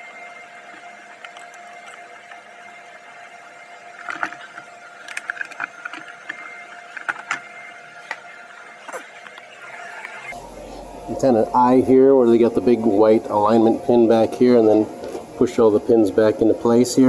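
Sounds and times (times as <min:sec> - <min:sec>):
steady hum: 0:00.0 - 0:17.0
plastic parts clicking and knocking: 0:04.0 - 0:08.3.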